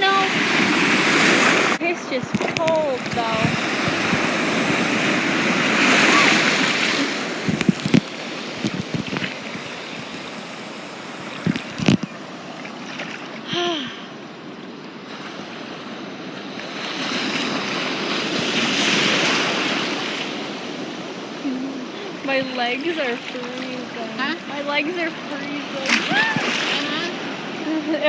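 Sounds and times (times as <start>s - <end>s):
ocean surf washing: 0.0s - 28.0s.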